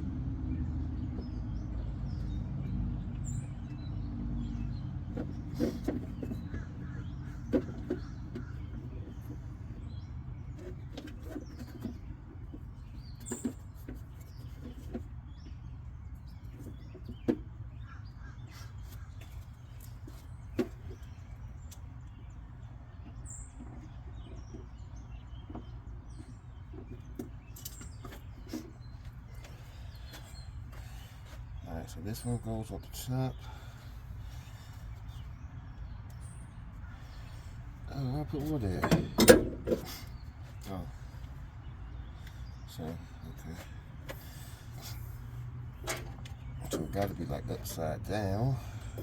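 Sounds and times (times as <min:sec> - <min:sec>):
light clicks and knocks: 0:38.3 - 0:40.6, 0:45.8 - 0:47.8.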